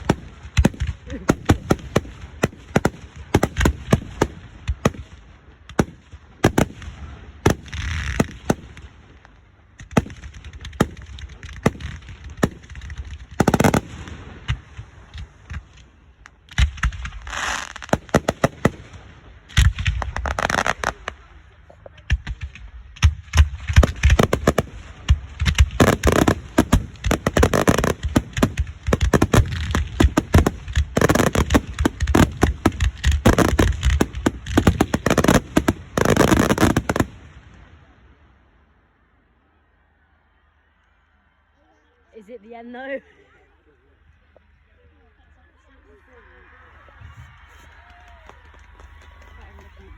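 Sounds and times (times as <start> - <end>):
fireworks bangs and crackles: 0.0 - 38.6, 47.1 - 49.9
fireworks hissing bursts: 10.2 - 21.5, 23.7 - 37.4.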